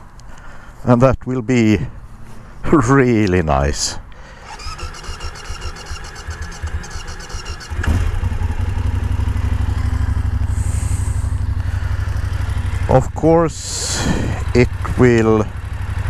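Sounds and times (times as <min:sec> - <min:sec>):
motorcycle engine idling: 0:04.1 - 0:16.0
electric starter cranking: 0:04.2 - 0:11.4.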